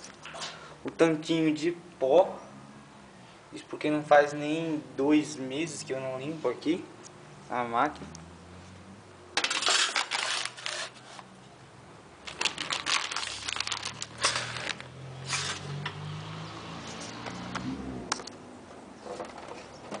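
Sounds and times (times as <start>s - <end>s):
rustling and crinkling: 9.4s - 11.3s, 12.2s - 16.0s.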